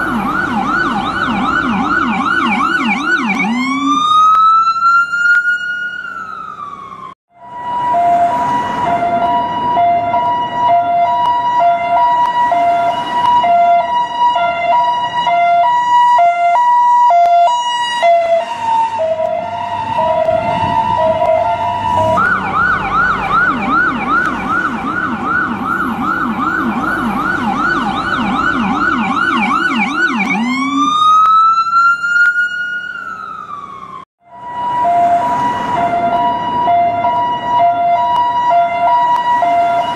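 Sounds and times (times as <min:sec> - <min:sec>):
ambulance siren: 0:00.0 - 0:39.9
low vehicle rumble: 0:18.1 - 0:39.9.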